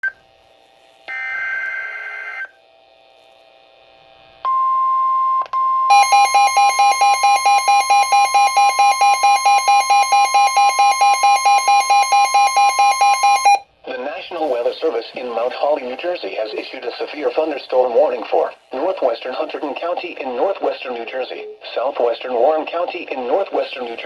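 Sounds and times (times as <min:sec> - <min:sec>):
shrill pulsing beep: 0:04.6 - 0:13.6.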